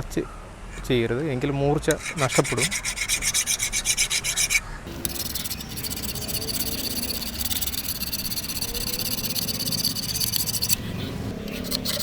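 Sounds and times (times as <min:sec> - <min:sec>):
file rasping on steel blade: 0:01.9 - 0:12.0.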